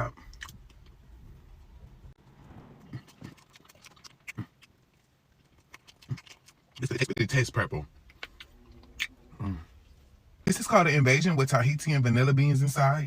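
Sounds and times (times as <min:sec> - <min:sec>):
person chewing cake: 0:03.0 - 0:07.4, 0:08.0 - 0:09.7.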